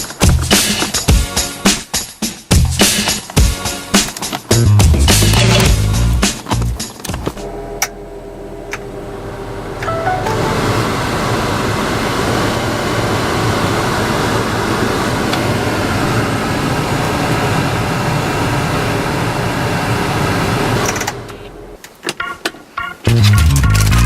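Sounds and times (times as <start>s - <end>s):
blower air rushing: 8.5s - 20.8s.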